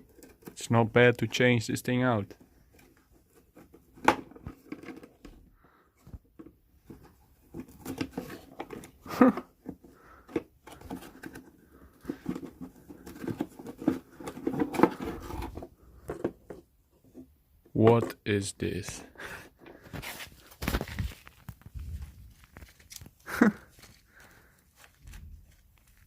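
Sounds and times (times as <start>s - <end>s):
parts clicking and scraping: 6.1s - 17.3s.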